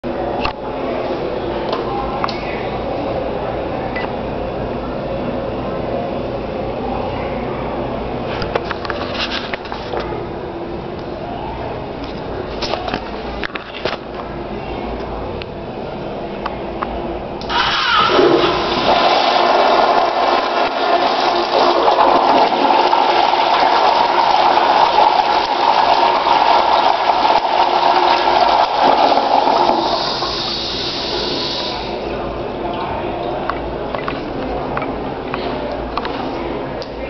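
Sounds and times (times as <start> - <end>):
toilet flushing: 17.4 - 32.2.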